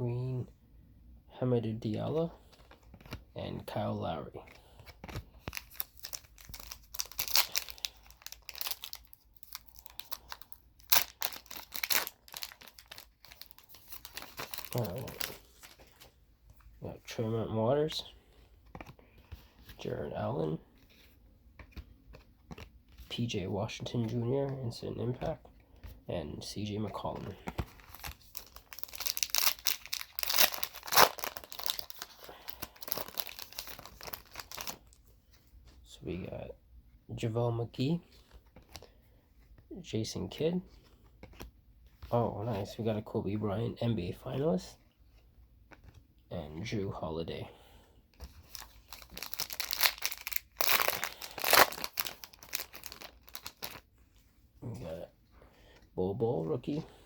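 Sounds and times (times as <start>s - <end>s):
plastic wrapper crinkling and tearing: 4.6s - 16.2s, 27.2s - 35.0s, 48.1s - 54.2s.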